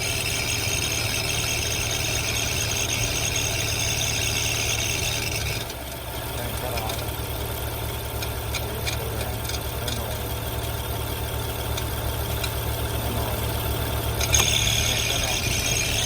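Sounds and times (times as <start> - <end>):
car engine idling: 0.0 - 16.0.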